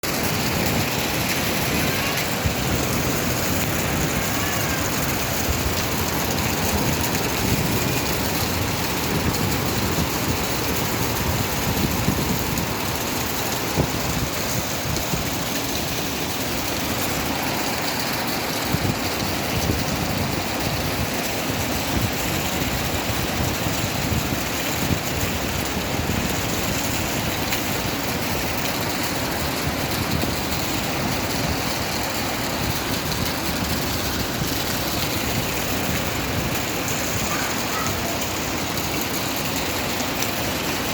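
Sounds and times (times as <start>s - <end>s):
floodwater rushing: 0.0s - 40.9s
heavy rain pouring: 0.0s - 40.9s.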